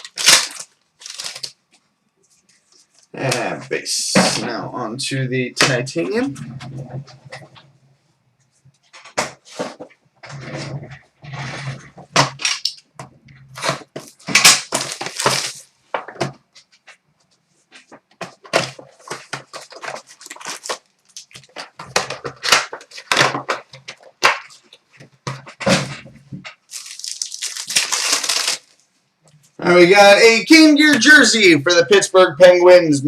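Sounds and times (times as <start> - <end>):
card pack wrappers tearing: 0.0 - 1.6, 13.6 - 15.7, 19.0 - 24.7, 26.6 - 28.8.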